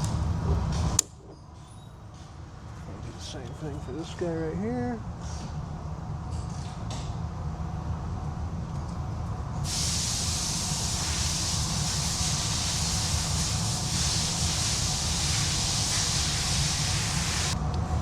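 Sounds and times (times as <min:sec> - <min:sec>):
gas hissing from a nozzle: 0:09.6 - 0:17.6.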